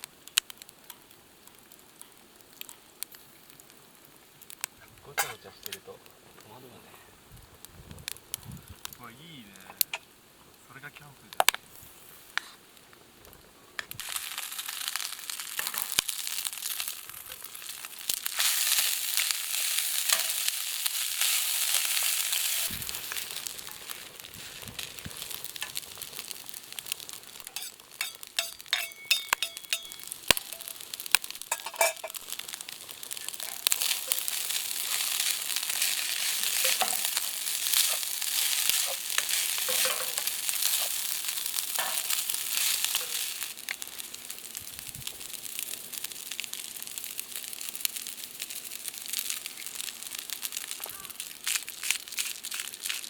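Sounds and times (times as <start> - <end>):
food sizzling in a pan: 13.8 - 53.0
utensil stirring in a pan: 14.0 - 53.0.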